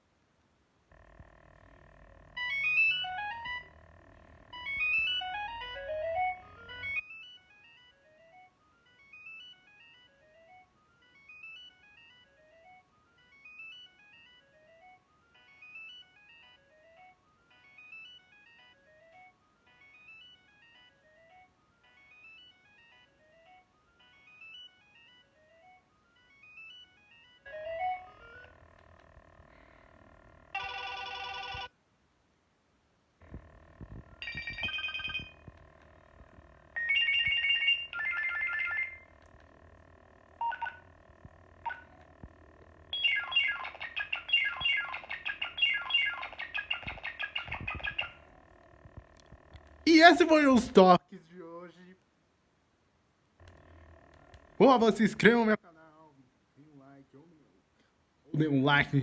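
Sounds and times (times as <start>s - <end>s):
buzzy tone: 0.9s - 7.0s, 33.2s - 38.0s
mobile phone ringtone melody: 1.3s - 28.8s, 29.4s - 31.7s, 33.3s - 39.2s, 40.3s - 41.0s, 41.6s - 48.4s.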